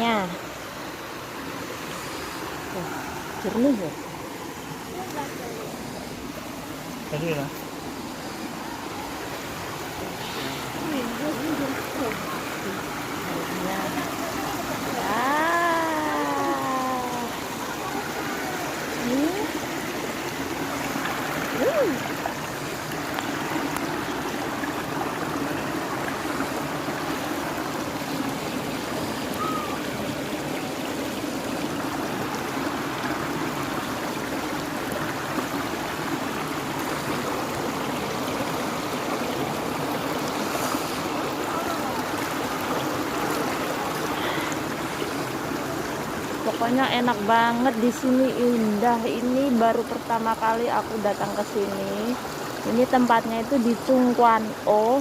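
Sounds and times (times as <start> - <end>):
stream flowing over rocks: 0.0 - 55.0.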